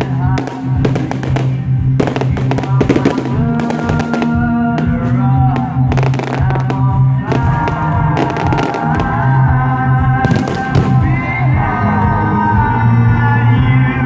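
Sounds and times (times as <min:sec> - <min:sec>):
fireworks bangs and crackles: 0:00.0 - 0:11.8
music playing: 0:00.0 - 0:14.0.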